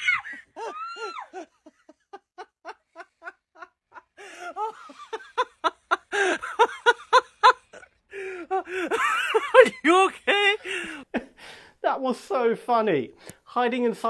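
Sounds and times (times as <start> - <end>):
person laughing hard: 0.0 - 11.0.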